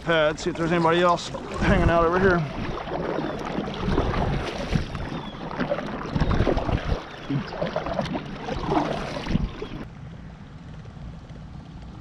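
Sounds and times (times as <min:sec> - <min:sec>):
paddle splashing water: 0:00.5 - 0:09.9.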